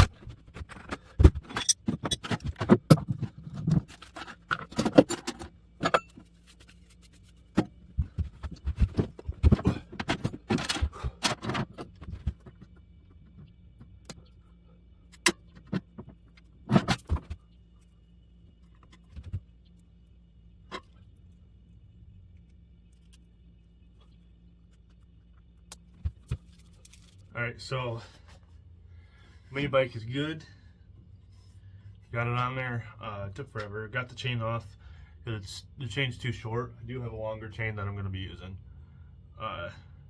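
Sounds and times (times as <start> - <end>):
metal parts and tools clinking: 0.0 - 6.3.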